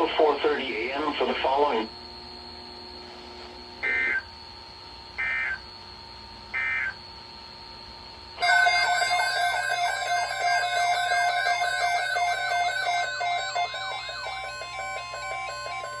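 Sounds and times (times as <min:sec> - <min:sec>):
electronic data bursts: 0:03.8 - 0:04.3, 0:05.2 - 0:05.7, 0:06.5 - 0:07.0, 0:08.4 - 0:16.0
electronic warbling tone: 0:03.8 - 0:04.3, 0:05.2 - 0:05.6, 0:06.6 - 0:07.0, 0:08.4 - 0:16.0.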